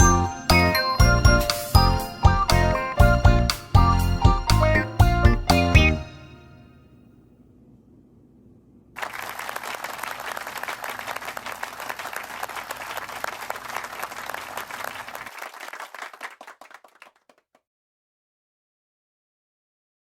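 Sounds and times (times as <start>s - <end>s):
applause: 9.0s - 17.6s.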